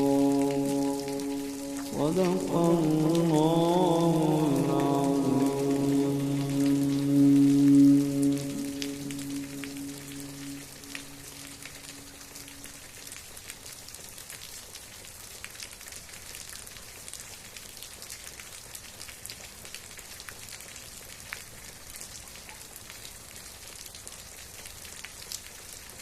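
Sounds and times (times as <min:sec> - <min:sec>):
rain pattering: 0:00.0 - 0:26.0.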